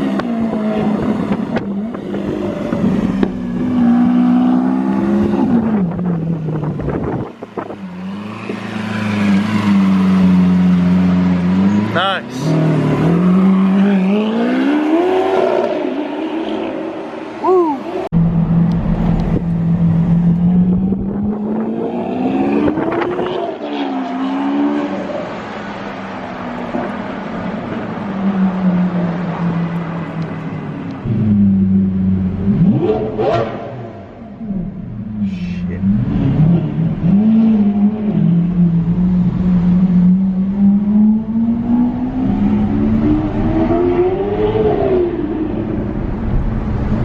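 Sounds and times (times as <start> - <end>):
sports car engine revving: 31.0 - 47.0.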